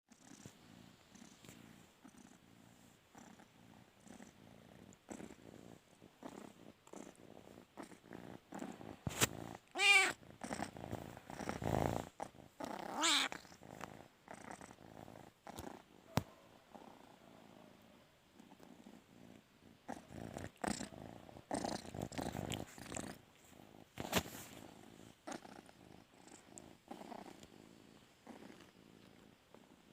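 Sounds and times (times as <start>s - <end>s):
cat purring: 0.1s - 29.9s
cat meowing: 9.8s - 10.2s, 13.0s - 13.3s.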